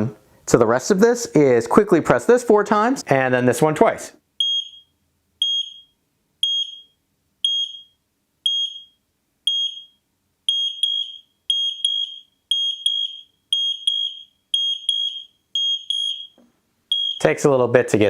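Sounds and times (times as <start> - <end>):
high-pitched detector beeps: 4.4 - 17.3.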